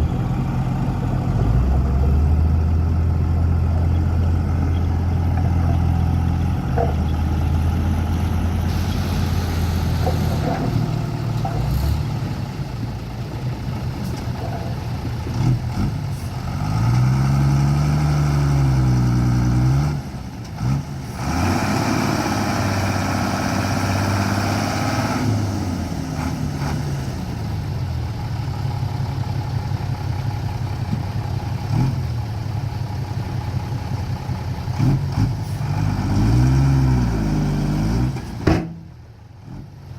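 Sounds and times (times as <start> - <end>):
truck engines idling: 0.0 - 39.9
engine revving: 5.7 - 12.4, 15.3 - 27.2, 34.7 - 38.3.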